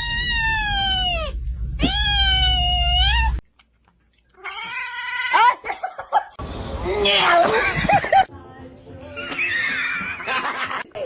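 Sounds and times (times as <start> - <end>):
cat meowing: 0.0 - 3.4.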